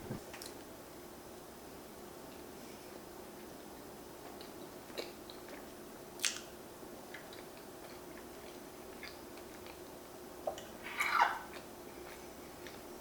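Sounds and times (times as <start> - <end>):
quiet chewing: 4.3 - 6.5, 7.1 - 10.8, 11.4 - 12.9.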